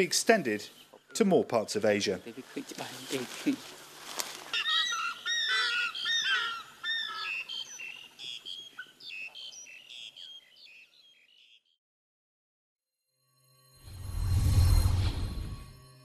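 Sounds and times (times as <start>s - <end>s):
birds calling: 0.0s - 11.8s.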